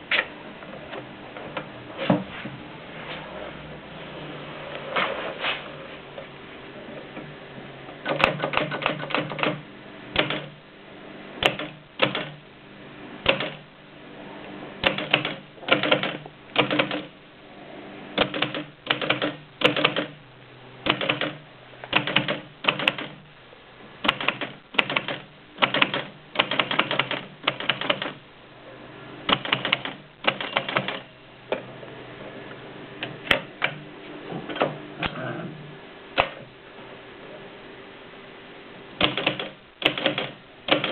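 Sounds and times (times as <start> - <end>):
typewriter clacking: 8.0 - 9.6, 10.2 - 10.5, 13.3 - 13.6, 14.8 - 17.1, 18.2 - 20.1, 20.9 - 23.2, 24.0 - 28.2, 29.3 - 31.1, 39.0 - 40.9.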